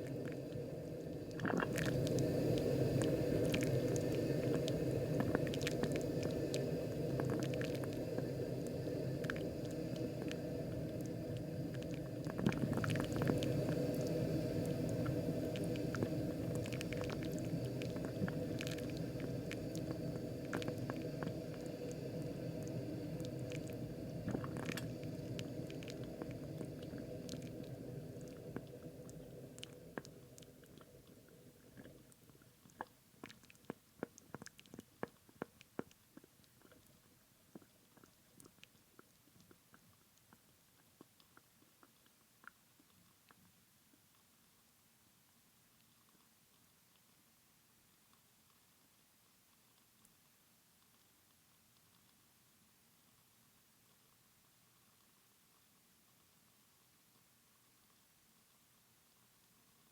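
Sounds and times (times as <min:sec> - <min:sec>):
coffee maker gurgling and bubbling: 0:00.0 - 0:43.5.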